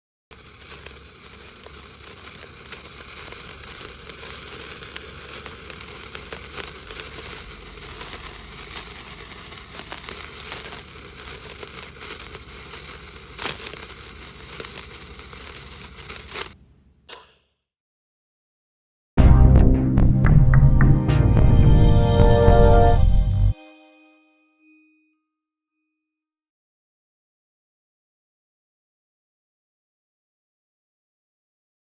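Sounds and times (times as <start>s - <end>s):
sparkler crackling hiss: 0.3s - 17.6s.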